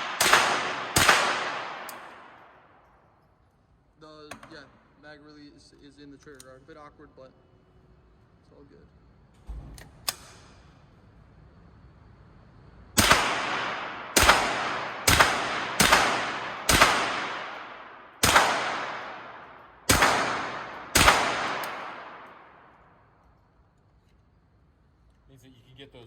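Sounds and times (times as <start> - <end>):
rifle shots echoing: 0.0 - 2.9, 13.0 - 23.1.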